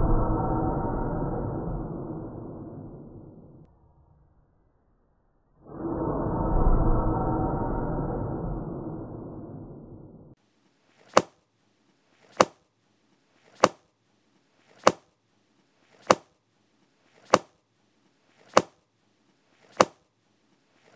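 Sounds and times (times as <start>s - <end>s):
low ominous drone: 0.0s - 4.8s, 5.5s - 10.4s
swish before slap: 11.0s - 11.4s, 12.2s - 12.6s, 13.5s - 13.8s, 19.7s - 20.0s
book slammed shut: 11.1s - 11.4s, 14.8s - 15.0s, 16.0s - 16.3s, 18.5s - 18.8s.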